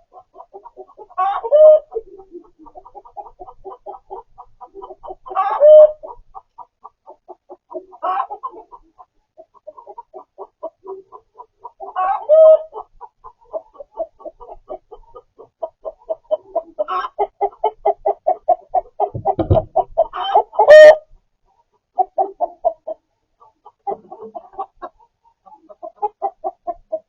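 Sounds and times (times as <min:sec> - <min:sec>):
chickens clucking: 0:00.0 - 0:27.0
chicken squawk: 0:00.1 - 0:06.2, 0:07.9 - 0:08.7, 0:11.8 - 0:15.2, 0:15.8 - 0:21.1
low thump: 0:19.2 - 0:19.8.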